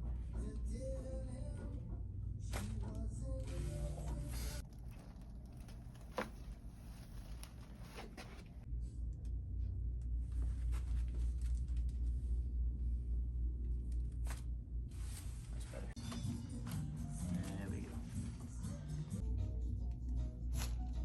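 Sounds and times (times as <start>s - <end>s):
low steady hum: 0.0s - 21.0s
neck joint cracking: 4.6s - 8.6s.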